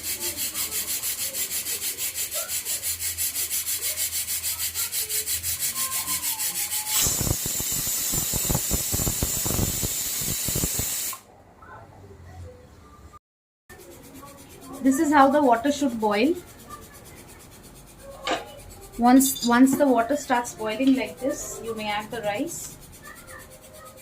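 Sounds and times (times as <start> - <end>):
pulsing hiss: 0.0 - 11.2.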